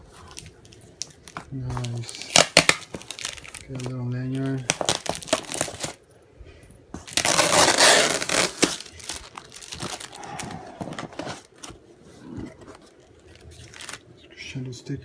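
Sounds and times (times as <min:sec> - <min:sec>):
packaging crinkling and tearing: 0:00.1 - 0:06.0, 0:07.0 - 0:11.8, 0:12.5 - 0:14.1.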